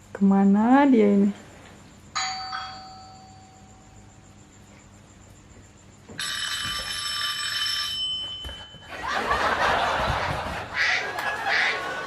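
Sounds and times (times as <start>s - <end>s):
high ringing tones: 2.1s - 4.4s, 6.1s - 9.2s.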